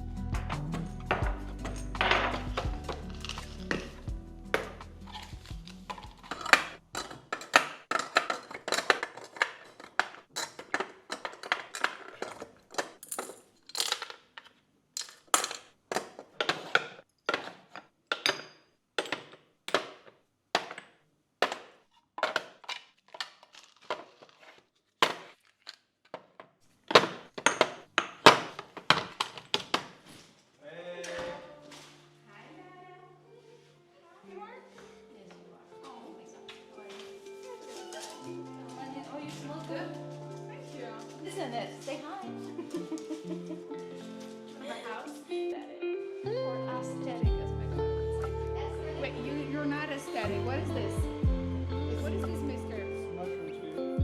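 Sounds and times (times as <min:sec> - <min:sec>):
household items clinking and knocking: 0:00.4 - 0:30.1, 0:35.9 - 0:45.2.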